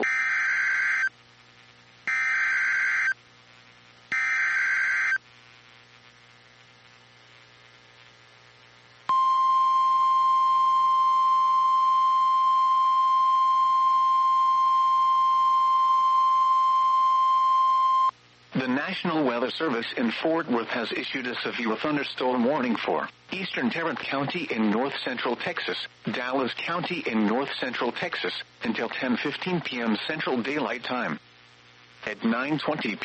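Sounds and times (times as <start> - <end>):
steady alarm tone: 2.1 - 3.2, 4.1 - 5.2, 9.1 - 18.1.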